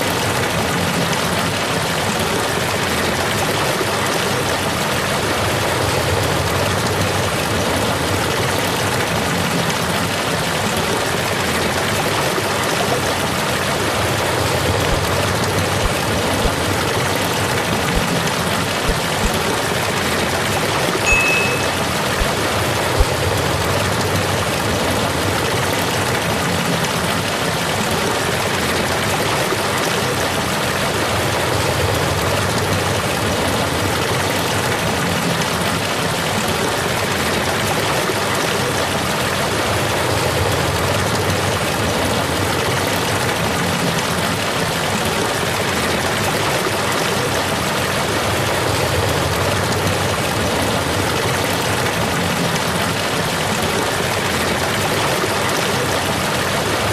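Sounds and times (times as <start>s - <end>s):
waterfall roaring: 0.0s - 56.9s.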